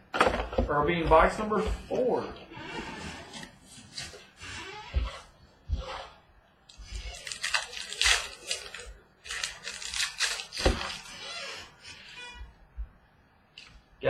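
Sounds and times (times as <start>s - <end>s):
card packaging rustling and tearing: 6.8s - 11.6s.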